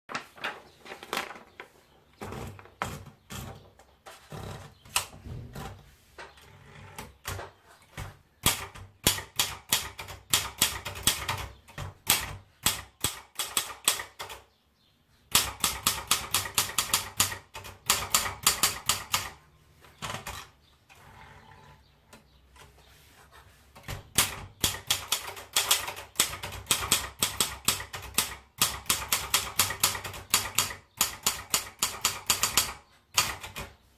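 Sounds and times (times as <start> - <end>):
typewriter keystrokes: 8.5 - 14.4, 24.1 - 33.7.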